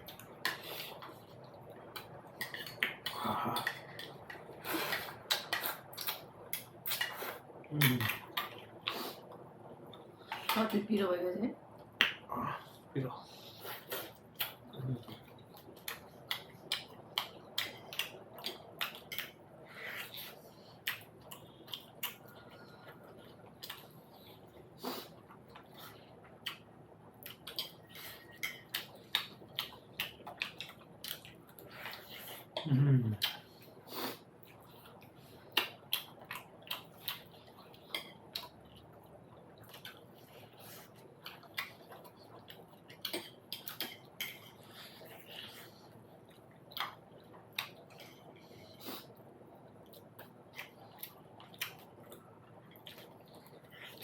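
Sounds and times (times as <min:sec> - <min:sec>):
wet chewing and lip smacks: 0:13.6 - 0:54.0.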